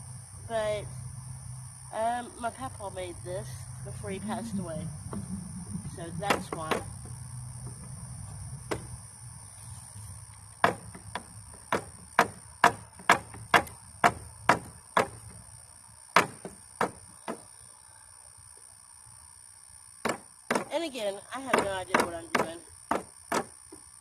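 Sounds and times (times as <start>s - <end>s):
hammer striking wooden boards: 10.6s - 15.2s, 16.2s - 17.4s, 20.0s - 20.7s, 21.5s - 23.5s.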